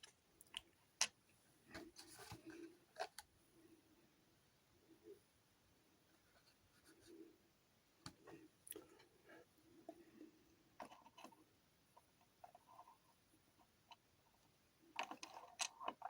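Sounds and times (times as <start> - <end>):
soft rustling: 1.6 - 3.2.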